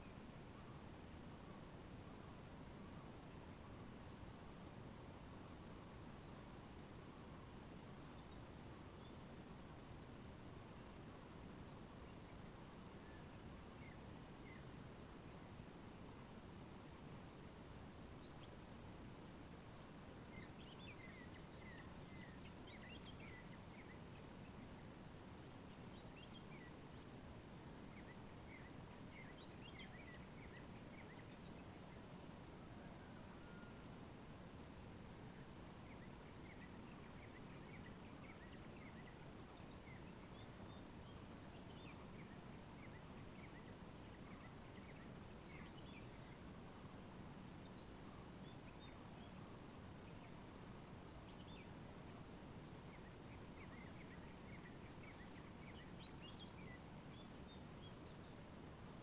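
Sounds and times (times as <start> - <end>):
low background noise: 0.0 - 59.0
low steady hiss: 0.0 - 59.0
small birds chirping: 19.7 - 33.1, 35.2 - 59.0.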